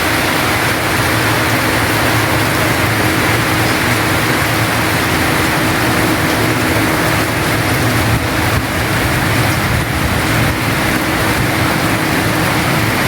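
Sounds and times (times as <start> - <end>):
heavy rain on a roof: 0.0 - 13.0.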